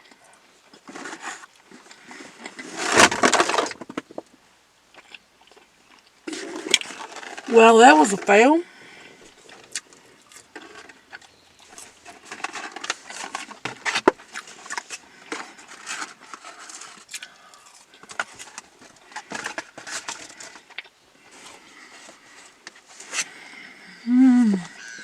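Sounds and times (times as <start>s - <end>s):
chewing and crunching: 4.9s - 7.5s, 8.7s - 23.6s.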